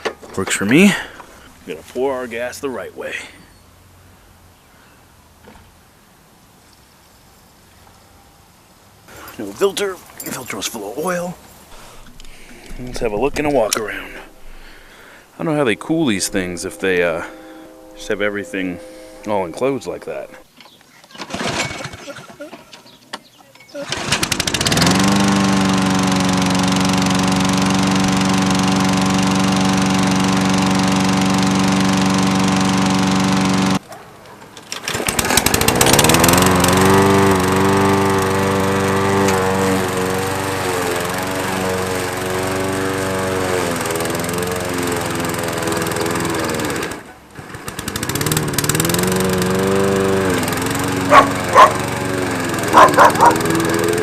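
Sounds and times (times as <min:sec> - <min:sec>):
lawn mower engine running: 0:00.0 - 0:02.0, 0:09.1 - 0:33.8, 0:34.4 - 0:54.0
dog barking: 0:51.1 - 0:51.8, 0:52.7 - 0:53.4.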